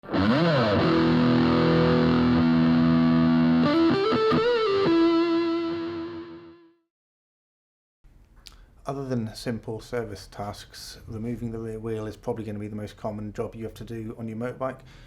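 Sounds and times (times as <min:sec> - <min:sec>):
distorted electric guitar chords: 0:00.0 - 0:06.8.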